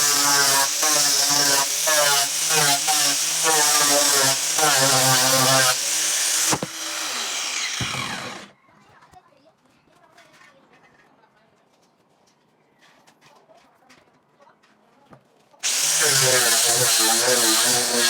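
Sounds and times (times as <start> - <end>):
electric sander on wood: 0.0 - 8.5, 15.6 - 18.0.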